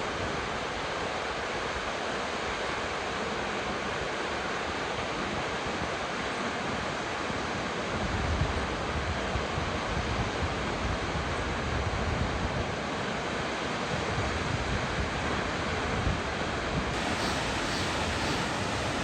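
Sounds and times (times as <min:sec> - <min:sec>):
waterfall roaring: 0:17.0 - 0:19.0.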